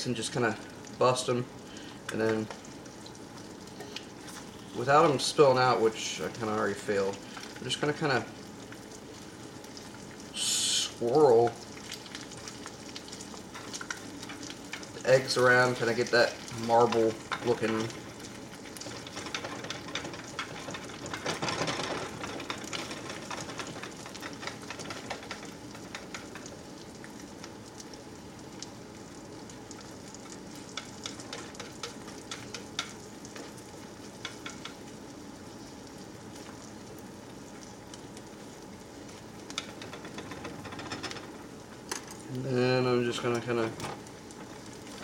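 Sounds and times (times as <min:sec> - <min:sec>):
eggs sizzling in a skillet: 0:00.0 - 0:45.0
chopsticks clicking and scraping pan: 0:13.5 - 0:26.5, 0:30.7 - 0:33.5, 0:34.2 - 0:34.8.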